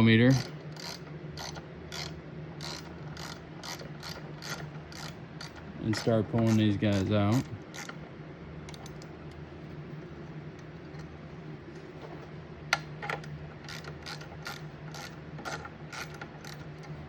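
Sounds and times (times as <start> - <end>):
steady low hum: 0.0 - 17.0
socket ratchet clicking: 0.3 - 8.0, 13.7 - 17.0.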